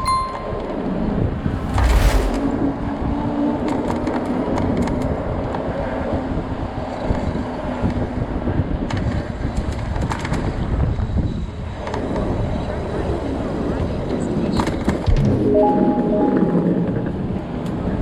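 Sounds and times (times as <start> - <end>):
wind gust: 1.2 - 3.0.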